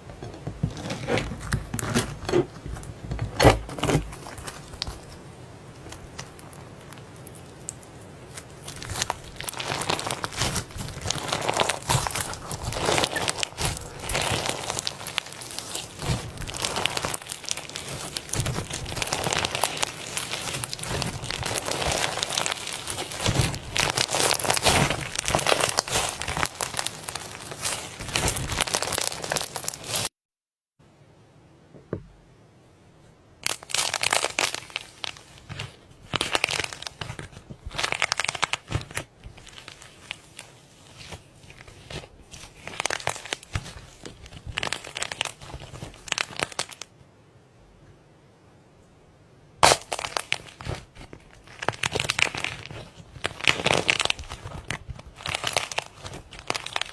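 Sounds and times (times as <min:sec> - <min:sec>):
slime crackling and popping: 0:02.8 - 0:30.1, 0:33.4 - 0:46.9, 0:49.6 - 0:56.9.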